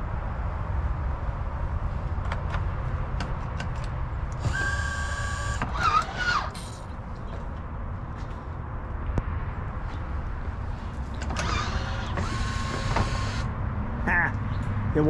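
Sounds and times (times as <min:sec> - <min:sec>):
wind rumble on microphone: 0:00.0 - 0:04.6
electric motor whine: 0:04.4 - 0:06.6, 0:11.4 - 0:13.5.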